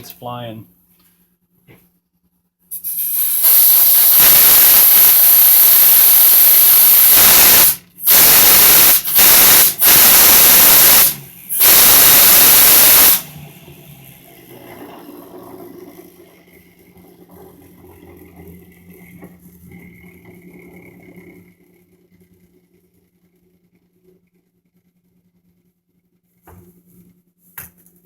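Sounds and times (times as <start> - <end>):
compressed air hissing: 2.7 - 13.4
fidget spinner whirring: 6.0 - 25.3.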